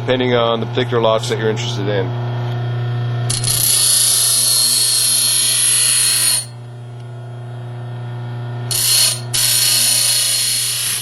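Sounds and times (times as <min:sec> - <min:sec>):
bench grinder motor hum: 0:02.5 - 0:11.0
metal grinding on wheel: 0:03.3 - 0:06.6, 0:08.7 - 0:11.0.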